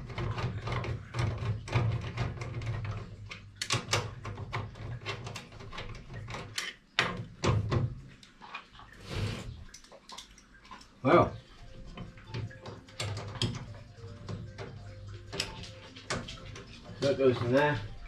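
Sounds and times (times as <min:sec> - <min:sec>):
steel parts knocking and clattering: 0:11.9 - 0:18.0.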